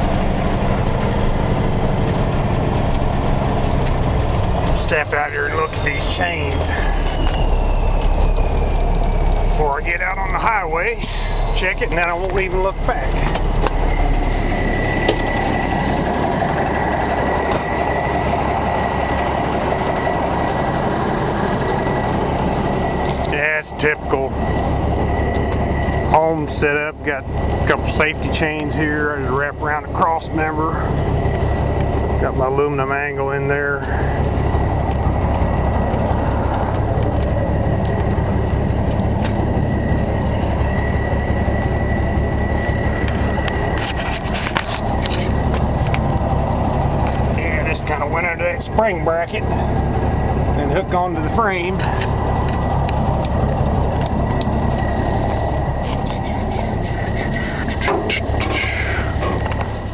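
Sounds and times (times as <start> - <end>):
diesel truck engine idling: 0.0 - 59.9
high engine whine: 0.0 - 59.9
thin high whine: 10.1 - 15.8.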